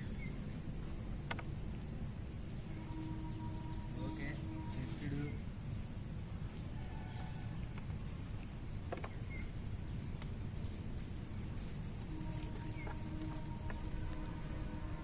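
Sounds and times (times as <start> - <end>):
steady hum: 0.0 - 6.9, 7.6 - 15.0
cricket chirping: 0.0 - 15.0.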